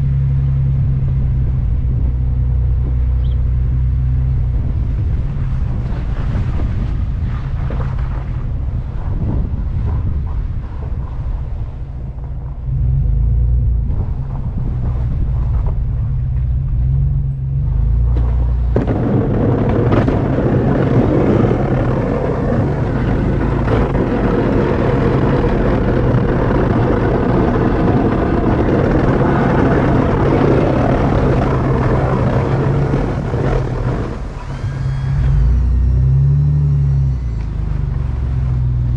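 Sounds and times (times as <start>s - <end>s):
truck engine rumbling: 0.0s - 38.9s
loud rushing noise: 18.8s - 38.5s.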